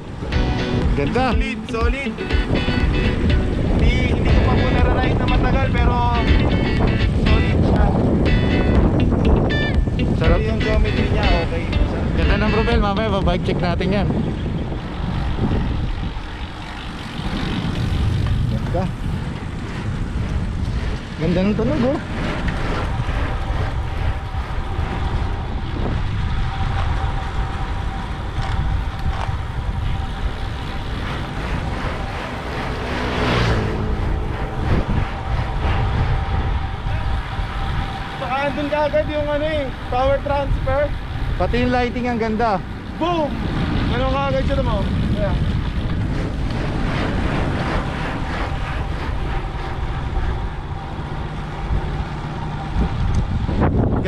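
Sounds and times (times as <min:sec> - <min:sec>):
low hum: 0:00.0 - 0:54.0
road noise: 0:00.0 - 0:54.0
wind buffeting microphone: 0:00.0 - 0:54.0
thin steady whir: 0:14.2 - 0:54.0.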